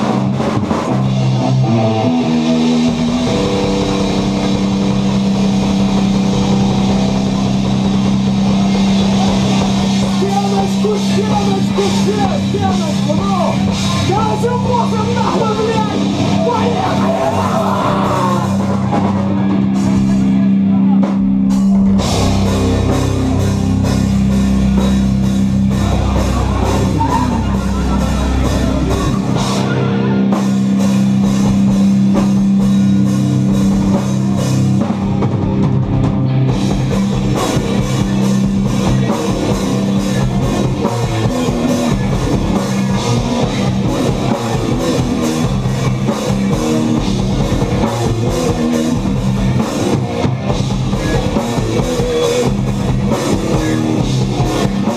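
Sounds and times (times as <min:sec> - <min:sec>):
pounding drumming: 0:00.0 - 0:20.5, 0:21.1 - 0:54.9
heavy rock band playing live: 0:00.0 - 0:54.9.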